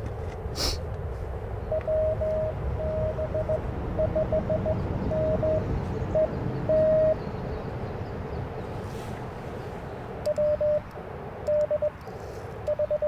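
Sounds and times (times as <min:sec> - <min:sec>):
low background rumble: 0:00.0 - 0:13.0
morse code tone: 0:01.7 - 0:07.2, 0:10.3 - 0:10.9, 0:11.5 - 0:11.9, 0:12.7 - 0:13.0.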